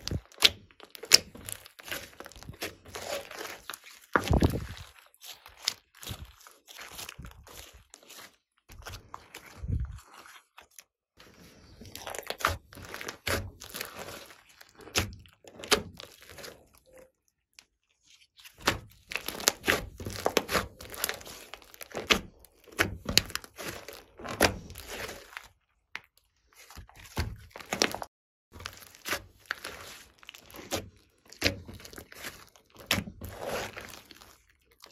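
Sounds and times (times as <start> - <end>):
slime crackling and popping: 0.0 - 10.8, 11.7 - 34.9.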